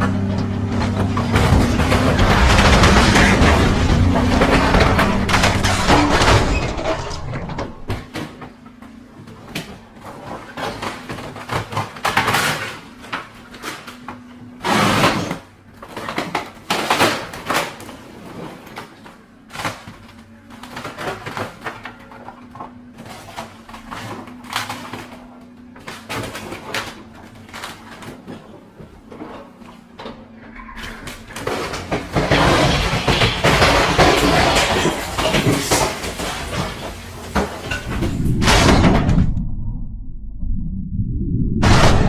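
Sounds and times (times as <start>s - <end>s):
bangs crashes and breakage: 0.0s - 8.1s, 30.7s - 39.5s.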